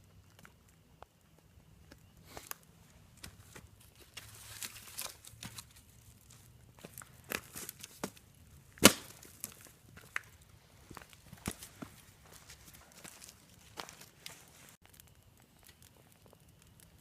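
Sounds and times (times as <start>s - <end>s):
twig cracking loudly: 8.8s - 10.3s
footsteps crunching on dry leaves: 10.9s - 14.8s.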